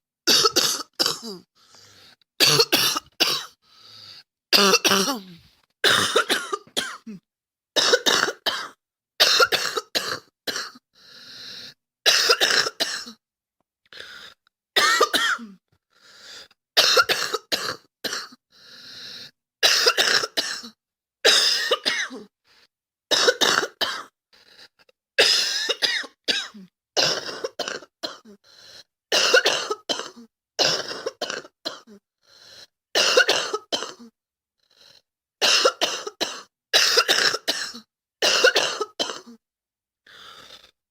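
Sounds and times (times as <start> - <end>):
girl coughing: 0.3 - 1.5, 2.4 - 3.5, 4.6 - 5.3, 5.9 - 7.2, 7.8 - 10.8, 14.8 - 15.6, 16.8 - 18.3, 19.6 - 22.2, 25.2 - 28.3, 33.0 - 34.1, 35.4 - 39.4.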